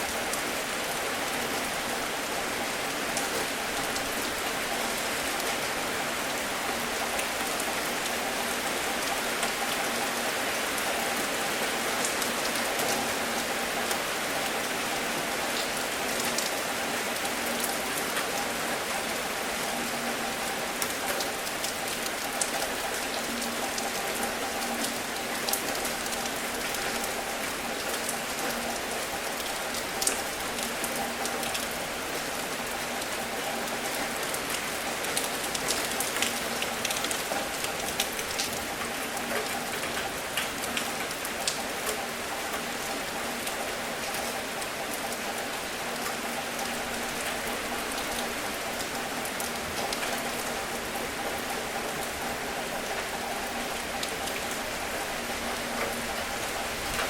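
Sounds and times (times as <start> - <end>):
raindrops hitting close by: 0.0 - 57.0
steady rain falling: 0.0 - 57.0.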